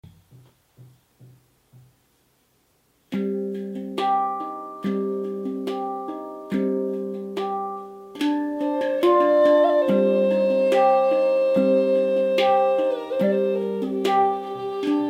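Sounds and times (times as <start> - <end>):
faint taps: 0.0 - 2.0
handpan notes ringing: 3.2 - 15.0.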